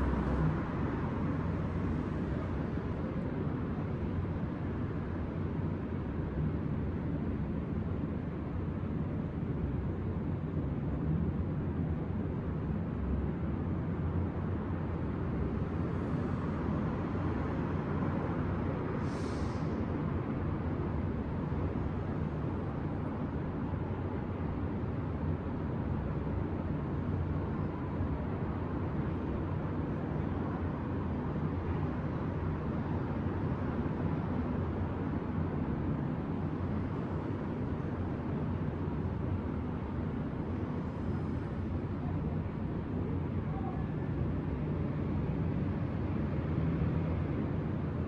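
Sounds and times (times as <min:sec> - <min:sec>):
low rumble of street traffic: 0:00.0 - 0:48.0
brief hiss: 0:19.0 - 0:19.8.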